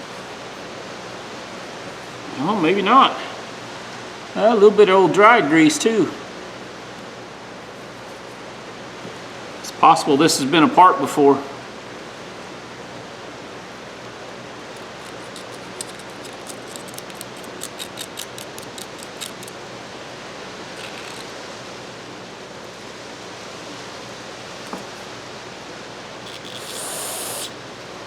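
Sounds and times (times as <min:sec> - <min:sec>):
metal parts clicking and tapping: 0:14.8 - 0:19.5
steady hiss: 0:24.4 - 0:28.0.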